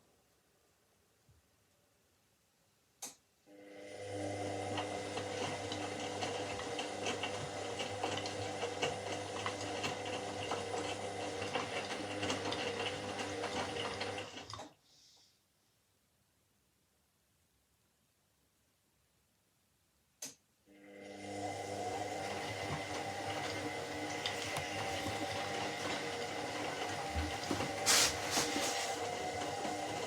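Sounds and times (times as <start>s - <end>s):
washing machine motor running: 3.5s - 14.6s, 20.7s - 30.0s.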